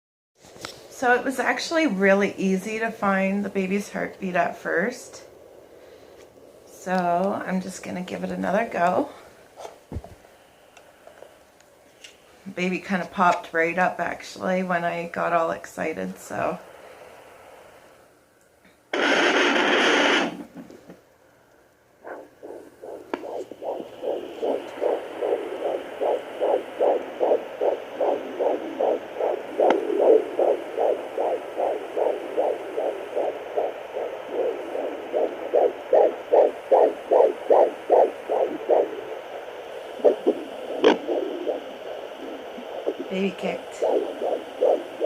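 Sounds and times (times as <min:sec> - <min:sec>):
whooshing heartbeat pulses: 0:22.0 - 0:45.0.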